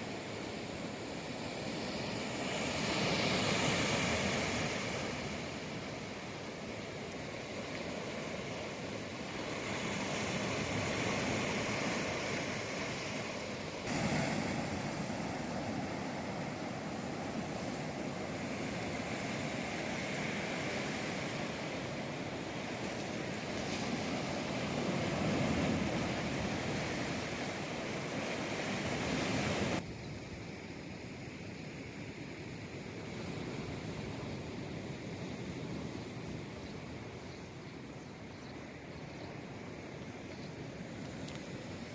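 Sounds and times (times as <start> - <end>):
sea waves breaking on shore: 0.0 - 29.8.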